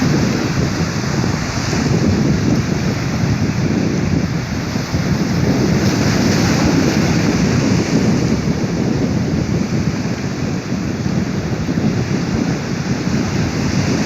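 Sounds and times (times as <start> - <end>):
sea surf washing ashore: 0.0 - 14.0
wind buffeting microphone: 0.0 - 14.0.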